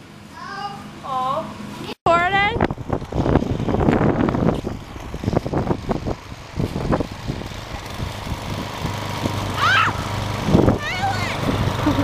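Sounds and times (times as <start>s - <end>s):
engine running at low speed: 0.0s - 12.0s
brief high cry: 9.6s - 10.1s.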